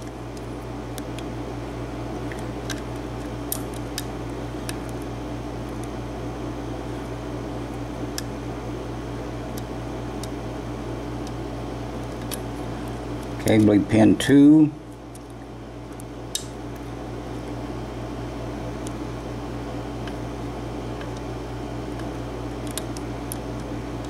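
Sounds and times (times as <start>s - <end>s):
air conditioner hum: 0.0s - 24.0s.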